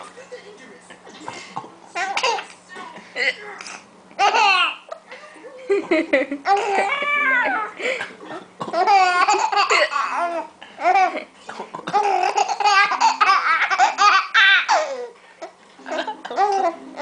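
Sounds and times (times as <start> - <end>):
baby laughing and squealing: 6.5 - 7.7.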